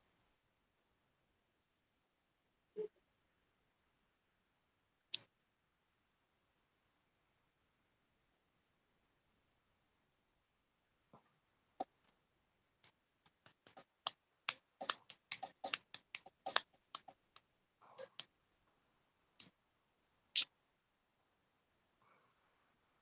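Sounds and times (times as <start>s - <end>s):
irregular sharp clicks: 5.1s - 5.3s, 12.8s - 18.3s.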